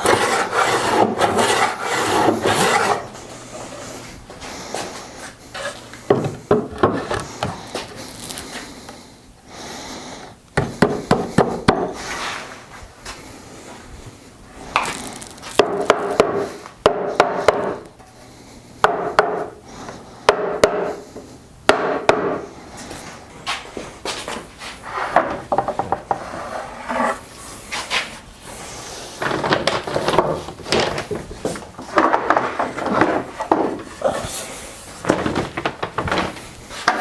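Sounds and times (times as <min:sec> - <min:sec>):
rough rubbing strokes: 0:00.0 - 0:03.2, 0:26.2 - 0:28.8.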